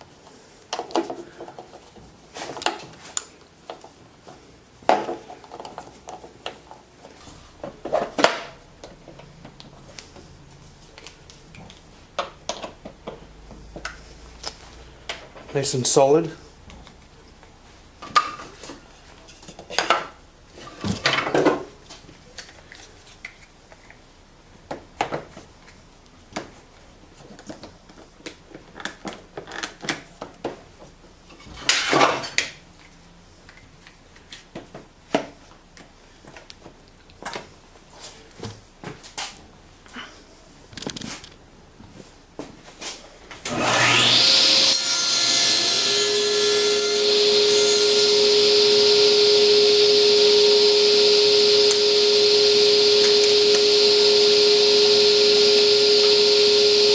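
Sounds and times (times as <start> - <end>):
table saw motor whine: 43.5 - 56.9.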